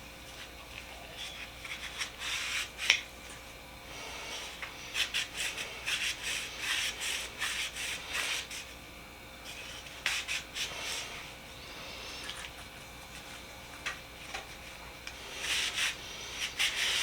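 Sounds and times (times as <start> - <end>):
hand tool scraping paint: 4.8 - 8.7, 15.2 - 17.0.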